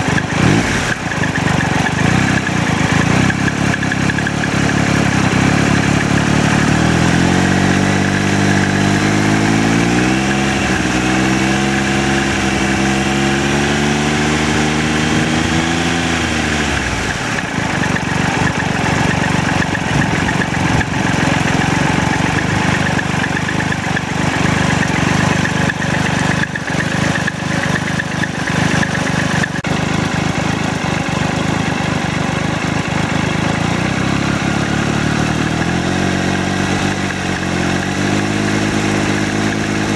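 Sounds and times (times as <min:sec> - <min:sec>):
engine rattling ticks: 0:00.0 - 0:39.9
motorcycle engine running: 0:00.0 - 0:39.9.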